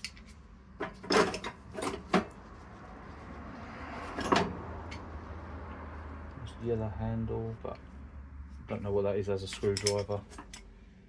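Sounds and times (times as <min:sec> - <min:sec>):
metal hand tools knocking and clinking: 0:09.5 - 0:10.6.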